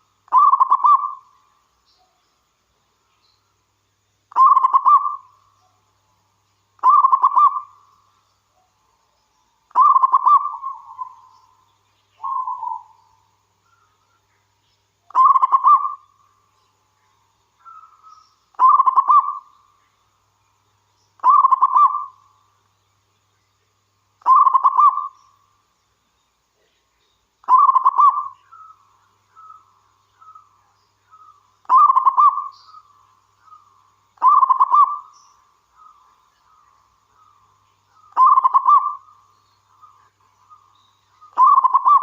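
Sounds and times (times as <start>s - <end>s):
dove cooing: 0.3s - 1.2s, 4.3s - 5.2s, 6.8s - 7.7s, 9.7s - 11.1s, 15.1s - 16.0s, 18.6s - 19.5s, 21.2s - 22.2s, 24.2s - 25.2s, 27.5s - 28.8s, 31.7s - 32.5s, 34.2s - 35.1s, 38.1s - 39.1s, 41.4s - 42.0s.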